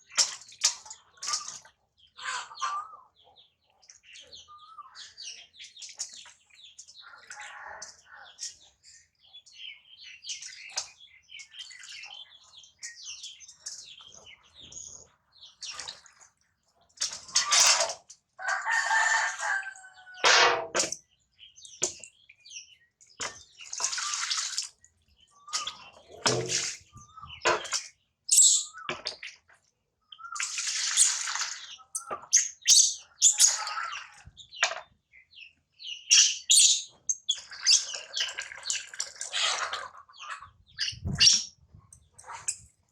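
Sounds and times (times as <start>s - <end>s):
water splashing in a bath: 0.0s - 1.8s, 15.5s - 18.2s, 23.2s - 28.0s, 30.3s - 32.6s, 37.3s - 39.9s.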